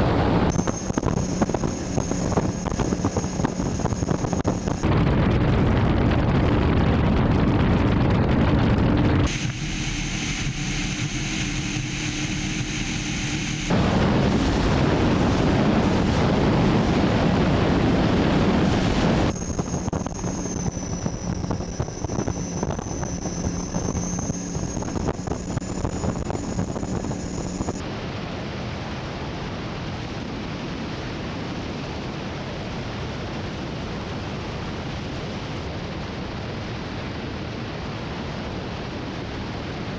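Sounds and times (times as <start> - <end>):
powerboat engines running: 0.0 - 27.8
water noise: 0.0 - 28.6
wind rush on microphone: 0.0 - 39.9
high steady whine: 0.4 - 6.0, 8.8 - 28.2.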